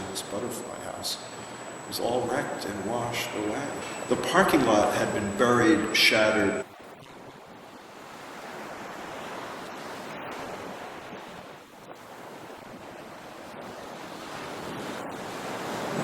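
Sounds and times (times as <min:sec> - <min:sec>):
ocean waves breaking: 0:00.0 - 0:16.0.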